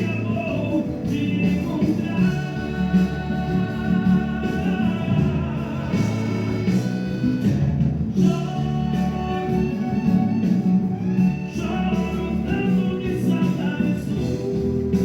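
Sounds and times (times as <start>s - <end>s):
person singing long notes: 0.0s - 10.7s
love song with guitar and beat: 0.0s - 15.0s.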